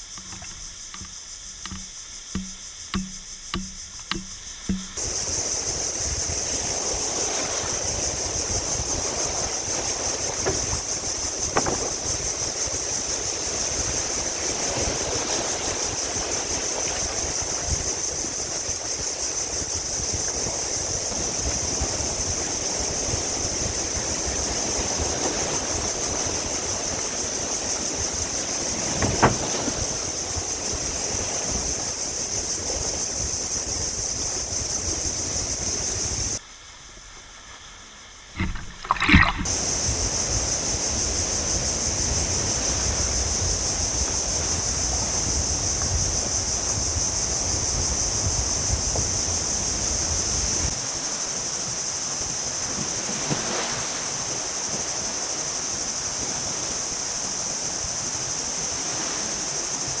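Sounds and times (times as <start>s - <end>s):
high insect drone: 0.0s - 60.0s
wind: 0.0s - 60.0s
sharp knocks: 0.2s - 5.0s, 11.5s - 11.9s, 28.9s - 29.7s, 38.4s - 39.5s
sea waves: 3.6s - 36.4s, 38.4s - 60.0s.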